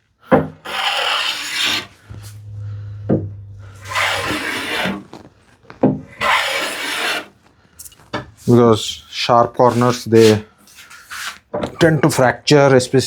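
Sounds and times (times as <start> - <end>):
plane knock: 2.1 - 4.9.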